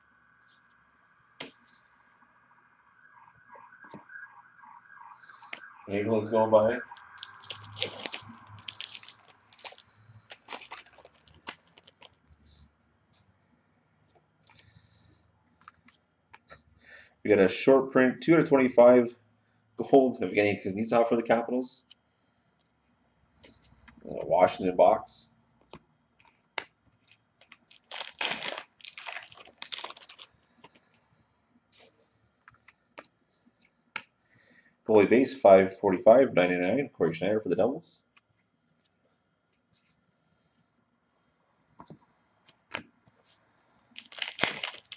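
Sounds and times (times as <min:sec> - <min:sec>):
card wrapper crinkly rustling: 0:05.3 - 0:12.6, 0:26.2 - 0:31.0, 0:42.7 - 0:44.9.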